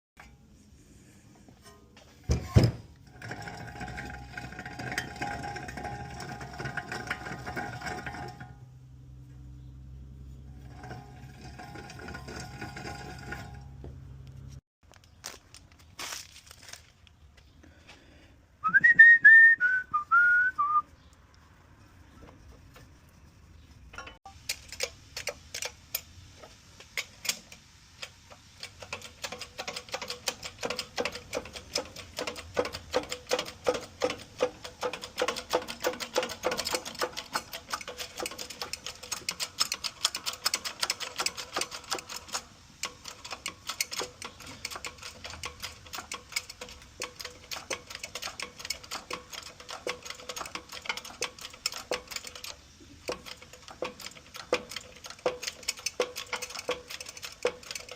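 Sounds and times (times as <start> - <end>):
wheel bearing clicking: 1.6 - 8.7, 10.3 - 14.6, 23.8 - 57.9.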